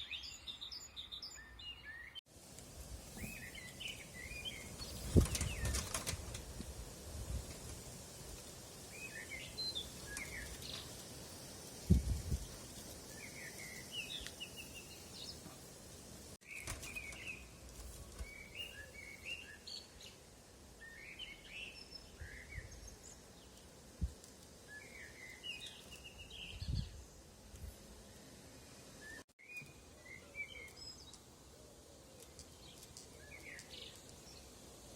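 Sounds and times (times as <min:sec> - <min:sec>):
small songbirds singing: 0:00.0 - 0:02.3, 0:03.2 - 0:06.3, 0:08.8 - 0:11.1, 0:11.7 - 0:15.5, 0:16.4 - 0:23.8, 0:24.6 - 0:27.3, 0:29.0 - 0:31.4, 0:32.0 - 0:34.6
steady outdoor hiss: 0:00.0 - 0:34.9.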